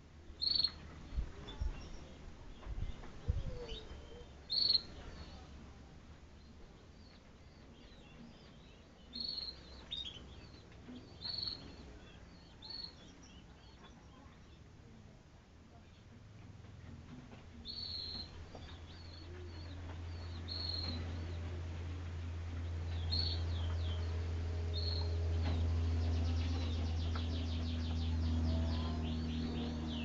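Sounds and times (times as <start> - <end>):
canaries chirping and trilling: 0.1 - 14.7, 15.9 - 30.0
low rumble: 17.5 - 30.0.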